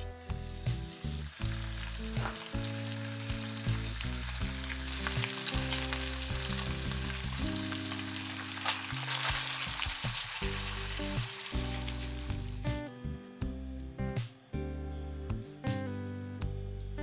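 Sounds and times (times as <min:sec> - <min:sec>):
meat sizzling in a frying pan: 0:00.0 - 0:12.7
background music with low notes: 0:00.0 - 0:17.0.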